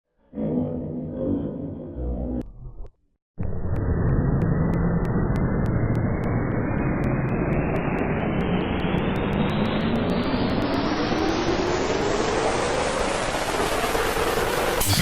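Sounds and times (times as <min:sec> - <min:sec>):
rising rush of noise: 0:03.4 - 0:13.7.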